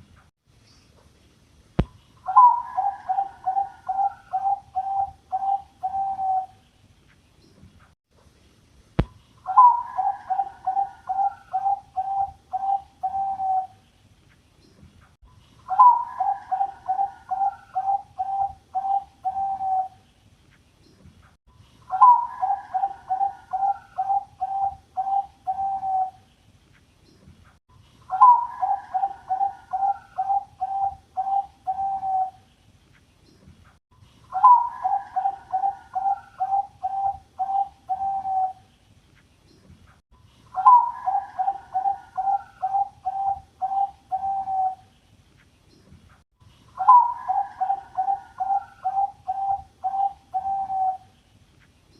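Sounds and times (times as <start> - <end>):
dove cooing: 2.2 - 6.6, 9.4 - 13.8, 15.7 - 20.0, 21.9 - 26.2, 28.1 - 32.4, 34.3 - 38.7, 40.5 - 44.9, 46.8 - 51.1.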